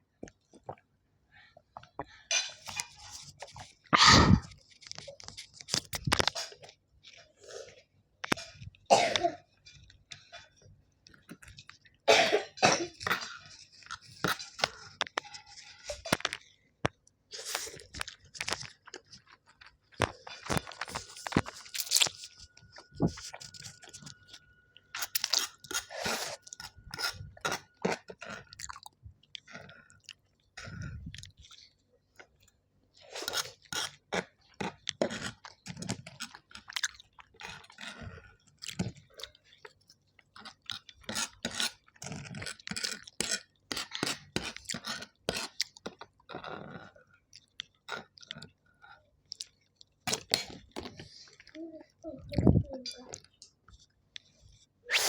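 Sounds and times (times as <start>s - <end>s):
person chewing and crunching: 12.9s - 51.6s.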